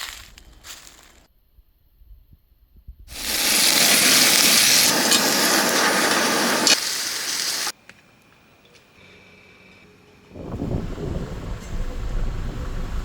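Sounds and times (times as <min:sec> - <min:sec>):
food sizzling in a hot pan: 0:03.1 - 0:07.8.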